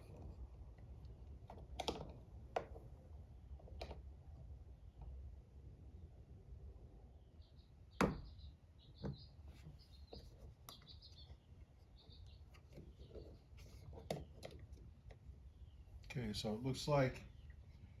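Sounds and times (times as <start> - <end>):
faint bird chirps: 7.1 - 14.4.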